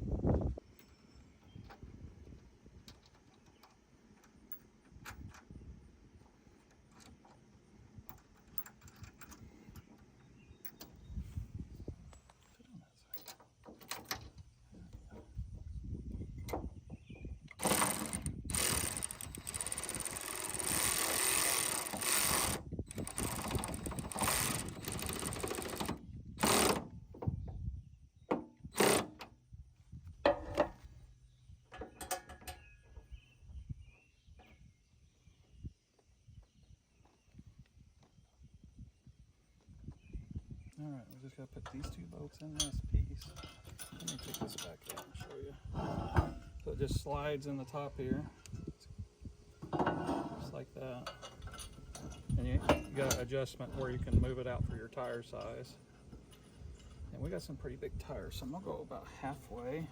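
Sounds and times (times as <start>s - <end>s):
metal hardware clicks and clinks: 12.1s - 14.4s, 31.7s - 32.7s, 41.6s - 46.7s, 49.6s - 57.6s
dense mechanical rattling: 17.6s - 26.8s.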